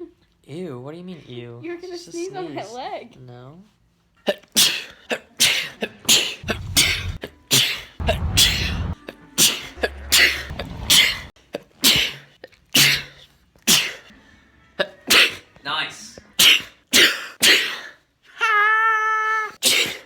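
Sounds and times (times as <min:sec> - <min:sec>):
man sneezing: 0:04.6 - 0:06.4, 0:11.9 - 0:14.1, 0:16.4 - 0:18.0, 0:19.6 - 0:20.0
background hum: 0:06.4 - 0:07.2.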